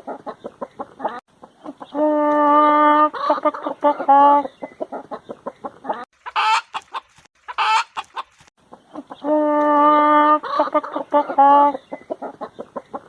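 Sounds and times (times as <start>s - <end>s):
hen clucking: 0.0s - 13.0s
high-pitched hen calls: 0.0s - 13.0s
long drawn-out hen call: 6.2s - 8.4s.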